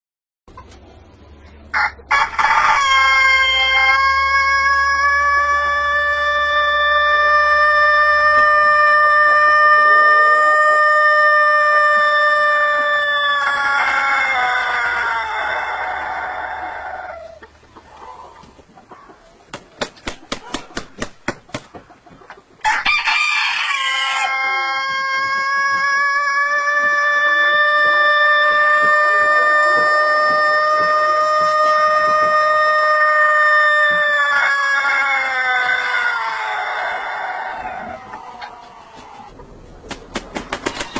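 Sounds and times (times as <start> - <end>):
rooster crowing: 1.8 - 17.4, 22.6 - 38.6.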